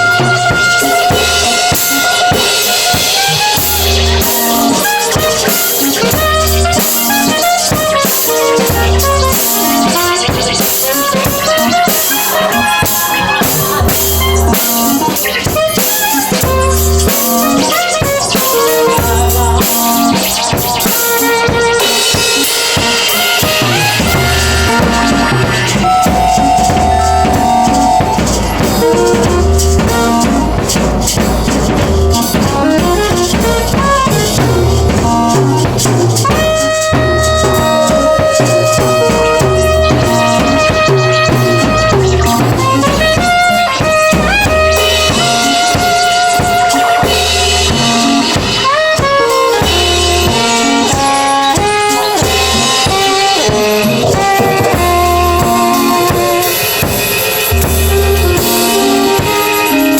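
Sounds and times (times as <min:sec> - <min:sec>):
drum kit: 0:00.0 - 0:59.9
guitar: 0:00.0 - 0:59.9
melodic line of short notes: 0:18.4 - 0:36.2
long held note: 0:22.8 - 0:35.4.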